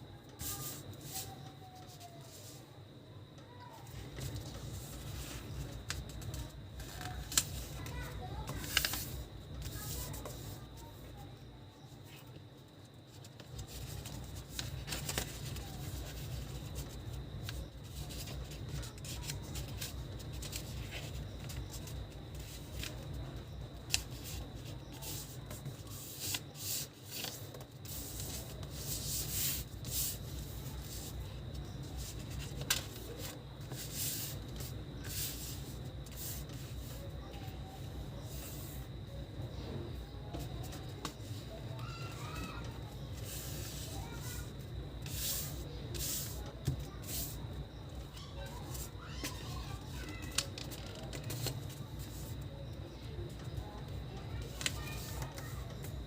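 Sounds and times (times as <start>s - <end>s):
paper being folded: 0.4s - 2.6s, 4.2s - 11.0s, 13.1s - 38.8s, 40.6s - 47.4s, 48.4s - 52.4s.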